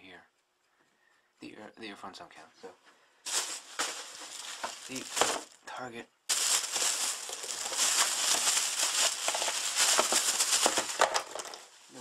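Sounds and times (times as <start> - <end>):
plastic packaging crinkling: 3.3 - 5.7, 6.3 - 12.0.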